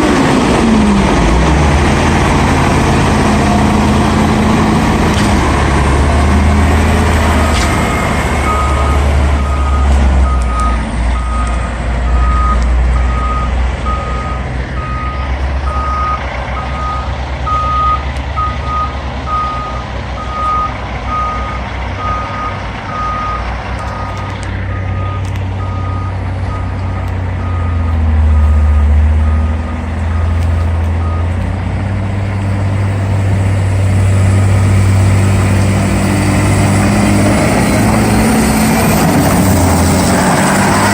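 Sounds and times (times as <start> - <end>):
diesel engine rumble: 0.0 - 40.9
backup alarm beeping: 7.4 - 26.8.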